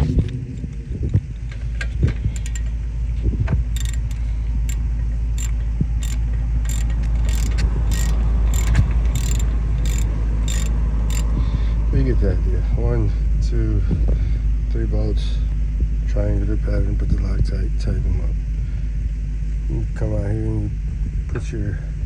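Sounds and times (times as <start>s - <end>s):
hand ratchet clicking: 0.0s - 2.8s, 3.8s - 11.3s
steady low rumble: 0.0s - 21.4s.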